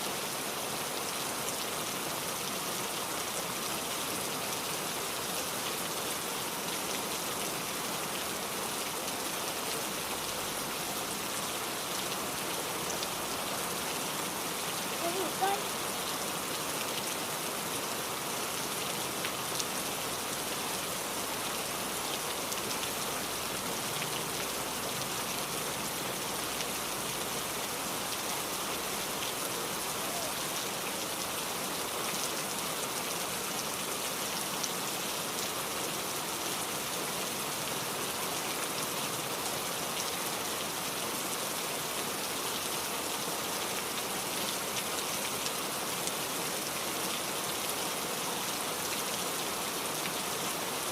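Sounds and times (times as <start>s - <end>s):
heavy rain hissing: 2.6s - 38.4s.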